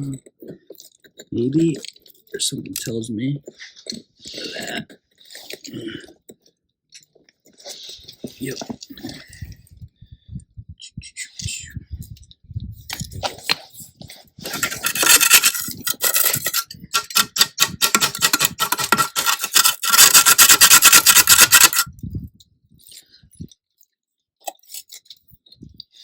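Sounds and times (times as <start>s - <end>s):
stone scraping: 14.4s - 21.9s.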